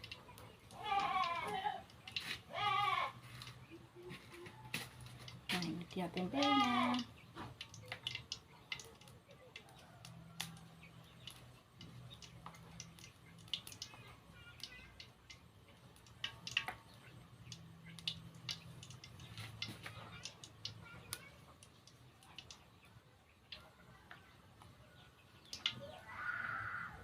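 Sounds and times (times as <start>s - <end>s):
utensils and dishes clicking: 4.8s - 14.0s, 14.6s - 22.6s.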